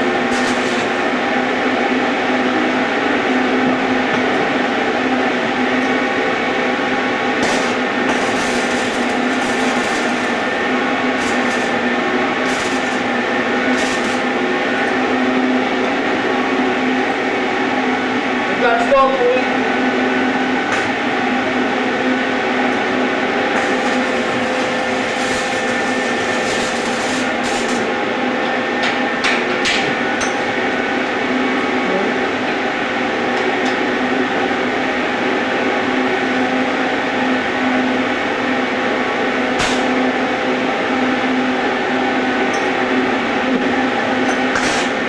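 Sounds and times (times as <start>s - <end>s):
welding arc crackling hiss: 0.0s - 1.4s, 7.3s - 15.1s, 20.6s - 21.4s, 23.4s - 28.0s, 39.6s - 40.1s, 44.5s - 45.0s
welding machine hum: 0.0s - 2.1s, 6.1s - 15.6s, 19.6s - 30.7s, 37.8s - 45.0s.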